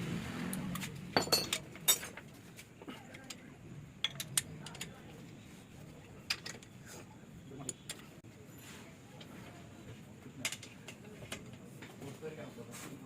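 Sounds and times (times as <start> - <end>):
metal tools clinking: 1.2 - 2.2.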